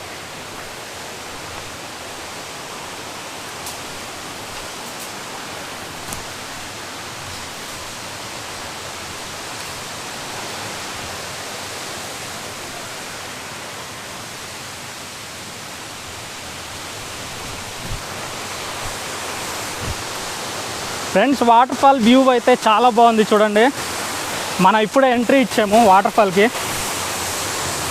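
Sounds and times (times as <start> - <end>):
waterfall pouring: 0.0 - 27.9.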